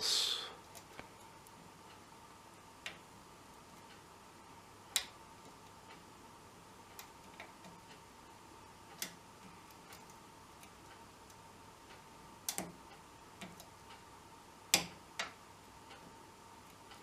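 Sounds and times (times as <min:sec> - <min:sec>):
faint high hum: 0:00.0 - 0:17.0
metallic clicks and taps: 0:06.9 - 0:08.0, 0:08.9 - 0:14.0, 0:14.7 - 0:16.1.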